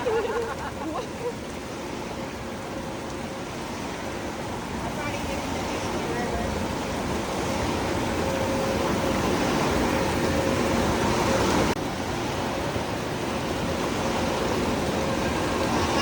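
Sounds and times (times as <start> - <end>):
indoor waterpark roar: 0.0 - 16.0.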